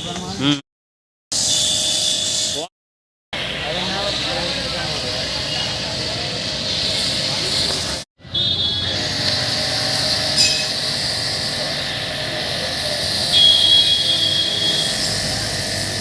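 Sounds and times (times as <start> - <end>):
pressure washer spraying: 3.7 - 8.0, 8.9 - 16.0.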